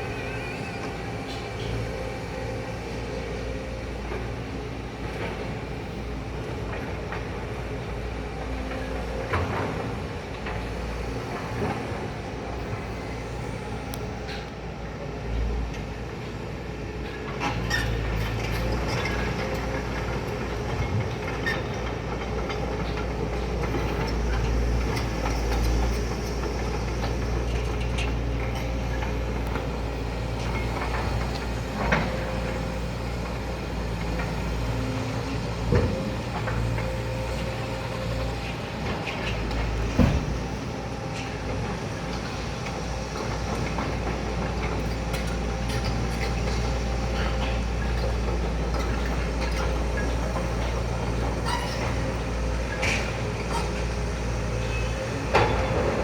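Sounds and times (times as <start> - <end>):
heavy engine rumbling: 0.0 - 56.0.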